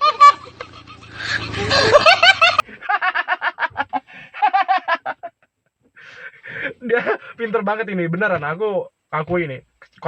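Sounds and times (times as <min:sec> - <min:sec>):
person laughing: 0:00.0 - 0:05.4.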